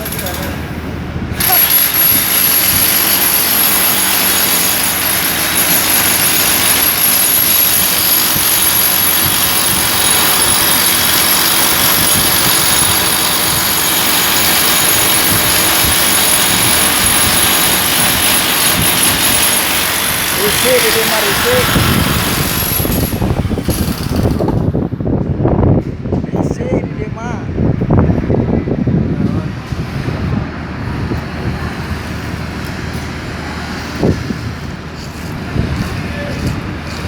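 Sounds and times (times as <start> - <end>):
hammer drill chiselling concrete: 0.0 - 0.6, 1.4 - 24.7.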